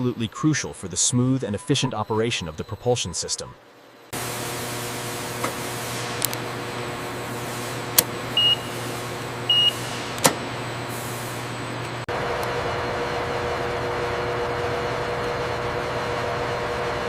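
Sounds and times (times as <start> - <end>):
machinery hum: 0.0 - 17.0
short high beeps: 8.4 - 8.8.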